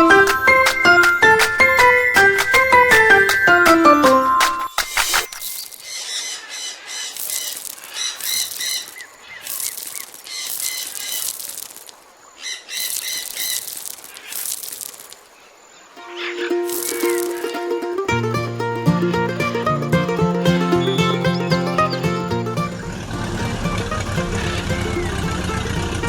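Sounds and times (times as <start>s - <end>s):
birds chirping: 0.1s - 14.6s, 20.5s - 26.0s.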